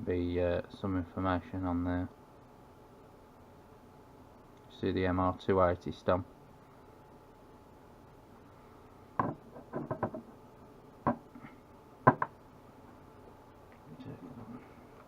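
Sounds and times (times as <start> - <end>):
metal tools knocking on hard surface: 9.2 - 10.3, 12.0 - 12.3.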